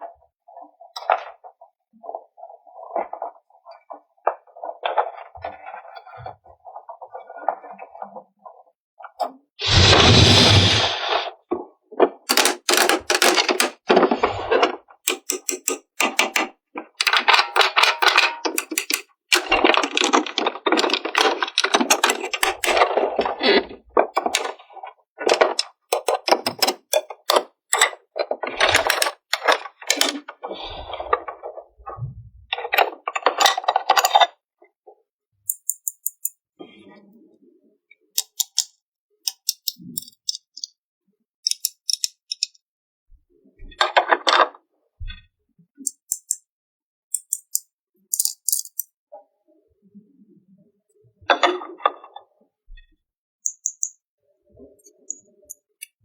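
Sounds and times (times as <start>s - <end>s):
plastic toy pieces clicking: 12.3s - 13.8s, 15.1s - 22.8s, 24.2s - 24.6s, 25.3s - 28.0s, 28.7s - 30.2s, 35.5s - 36.4s, 38.2s - 38.7s, 39.3s - 40.7s, 41.4s - 42.6s, 45.8s - 46.4s, 47.1s - 48.9s, 53.5s - 54.0s.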